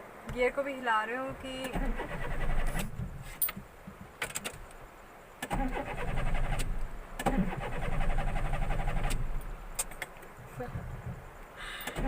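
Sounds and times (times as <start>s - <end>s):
starter motor cranking engine: 1.6s - 3.0s, 5.4s - 9.5s.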